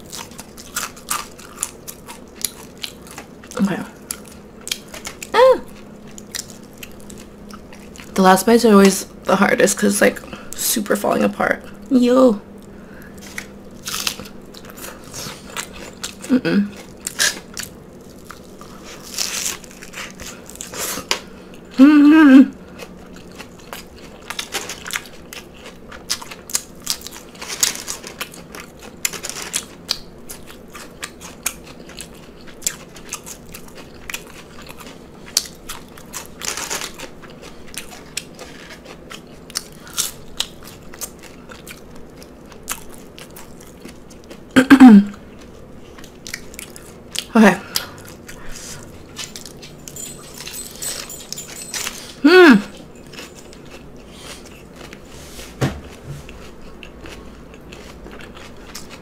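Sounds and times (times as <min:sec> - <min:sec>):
chewing food close up: 0:00.0 - 0:08.2, 0:12.6 - 0:21.8, 0:22.6 - 0:50.6, 0:51.5 - 0:55.1, 0:55.9 - 0:59.0
short voiced sound: 0:52.2 - 0:52.8.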